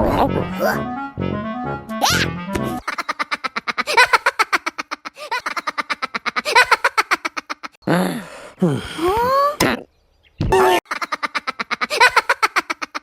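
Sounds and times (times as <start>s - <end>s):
music: 0.0s - 2.8s.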